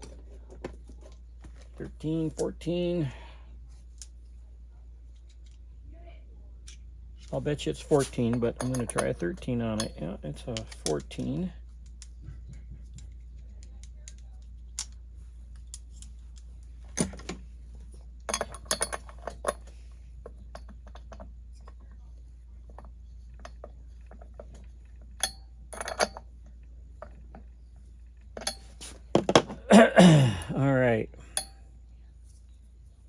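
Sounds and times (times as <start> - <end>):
metal tools clinking: 7.2 - 11.5, 18.3 - 21.9, 22.7 - 27.2, 28.4 - 29.0.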